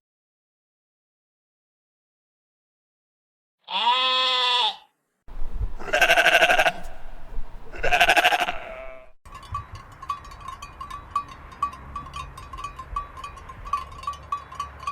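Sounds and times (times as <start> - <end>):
sheep bleating: 3.6 - 4.9, 5.8 - 7.1, 7.7 - 9.2.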